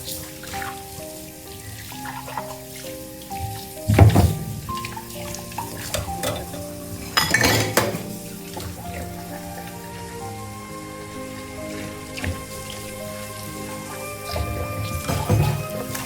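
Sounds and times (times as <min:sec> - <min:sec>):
soft background music: 0:00.0 - 0:16.0
clinking objects: 0:05.6 - 0:08.8.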